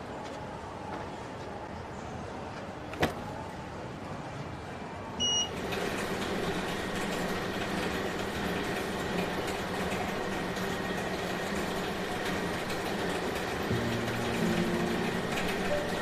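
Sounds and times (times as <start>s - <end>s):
short electronic beep: 5.2s - 5.5s
wrapping machine motor humming: 5.5s - 16.0s.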